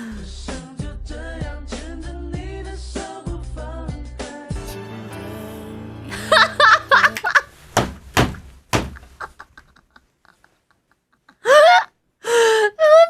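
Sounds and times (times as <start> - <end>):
music: 0.0 - 7.3
sharp knocks: 7.7 - 9.2
woman laughing in high squeals: 11.2 - 12.0.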